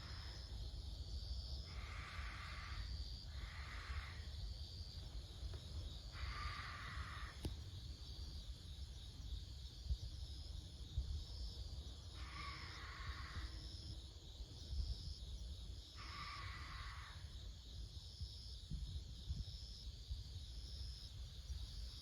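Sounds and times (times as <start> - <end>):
insects chirping: 0.0 - 22.0
owl screeching calls: 1.7 - 4.3, 6.1 - 7.5, 12.2 - 13.6, 16.0 - 17.3.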